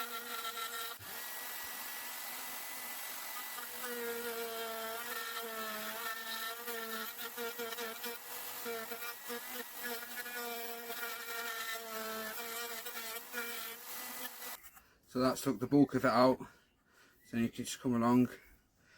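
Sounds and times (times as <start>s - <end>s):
electric router cutting wood: 0.0s - 14.6s.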